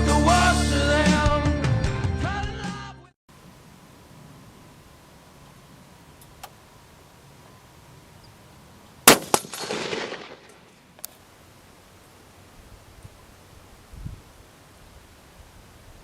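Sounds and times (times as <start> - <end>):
rifle shot with echo: 9.0 - 10.7.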